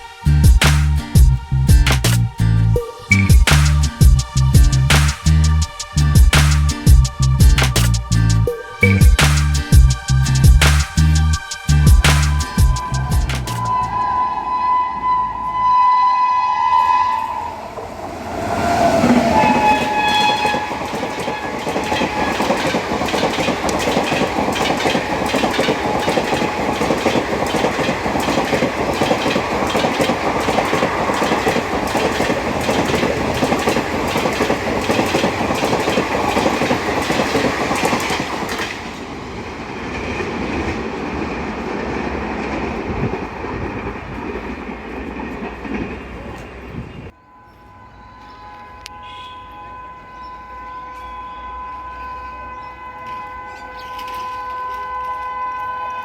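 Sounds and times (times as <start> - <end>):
train rumble: 0.0 - 47.8
locomotive horn: 11.1 - 37.2, 46.9 - 56.0
train wheels clickety-clack: 17.8 - 46.9.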